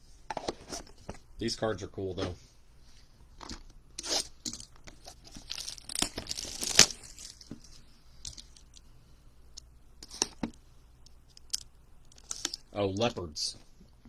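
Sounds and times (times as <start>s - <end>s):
plastic wrapping crinkling and tearing: 3.4s - 8.8s.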